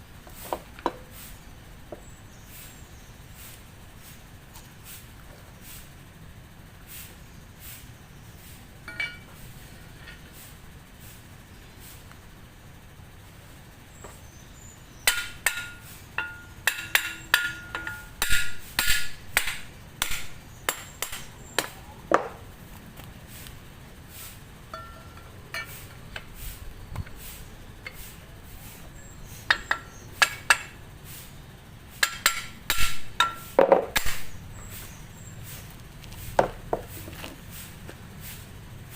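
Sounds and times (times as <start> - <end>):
hand tools tapping on metal: 8.8 - 9.4, 15.0 - 22.4, 24.7 - 26.4, 27.8 - 28.1, 29.4 - 30.8, 32.0 - 34.3.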